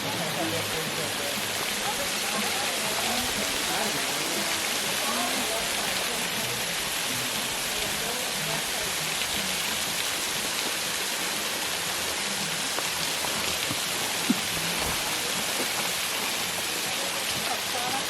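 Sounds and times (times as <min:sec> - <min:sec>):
waterfall splashing onto rock: 0:00.0 - 0:18.0.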